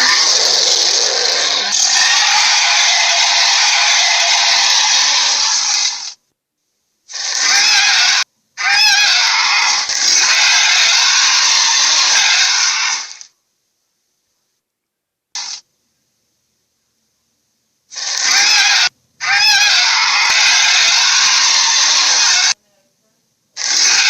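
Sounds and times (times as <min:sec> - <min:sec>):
gorilla harsh calls: 0:00.0 - 0:06.0, 0:07.1 - 0:13.2, 0:17.9 - 0:22.6, 0:23.6 - 0:24.0.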